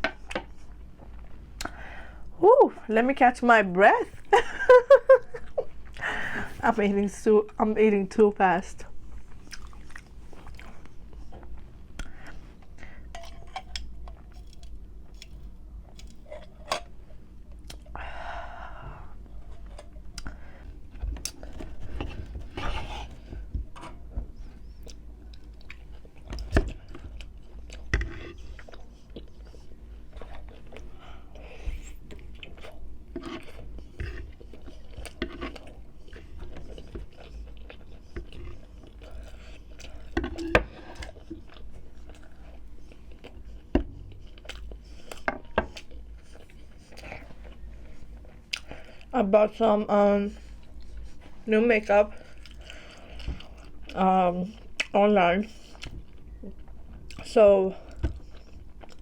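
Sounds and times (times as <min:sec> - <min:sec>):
person chewing crunchy food: 0:09.0 - 0:18.0, 0:18.8 - 0:49.1, 0:52.1 - 0:59.0.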